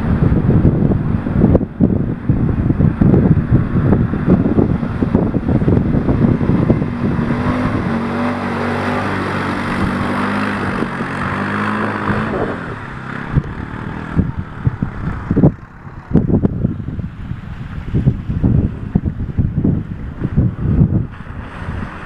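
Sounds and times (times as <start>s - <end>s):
atv engine running: 0.0s - 22.0s
wind buffeting microphone: 0.0s - 22.0s.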